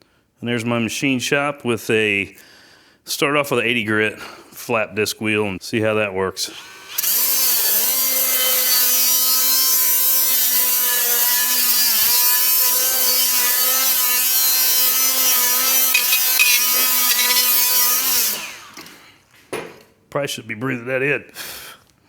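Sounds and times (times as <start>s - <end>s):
angle grinder sanding metal: 7.0s - 18.5s.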